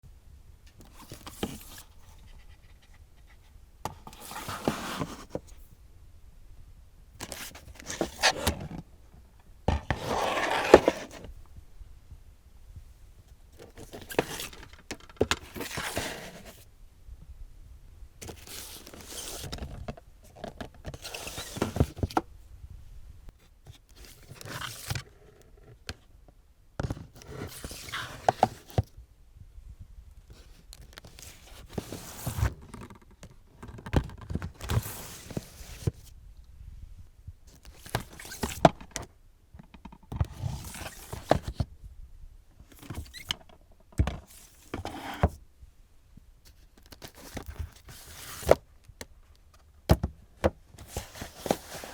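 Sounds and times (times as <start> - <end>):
plastic cases scraping and clacking: 3.8 - 5.5, 7.2 - 8.8, 9.7 - 11.3, 13.6 - 16.6, 18.2 - 22.2, 26.8 - 28.9, 30.4 - 36.1, 37.6 - 41.7, 42.7 - 45.4, 46.5 - 48.6, 49.6 - 51.9.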